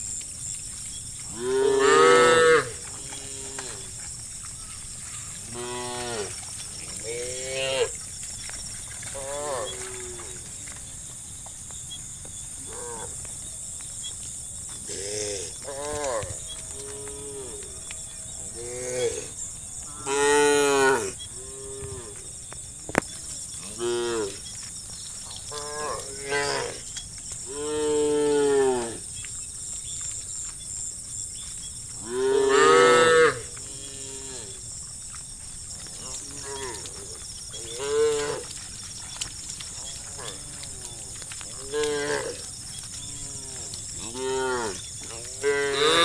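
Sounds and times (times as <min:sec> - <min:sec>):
cows mooing: 0:01.3 - 0:04.0, 0:05.4 - 0:08.0, 0:09.0 - 0:10.6, 0:14.8 - 0:22.2, 0:23.6 - 0:24.4, 0:25.5 - 0:26.9, 0:32.0 - 0:34.6, 0:35.9 - 0:38.6, 0:39.8 - 0:46.0.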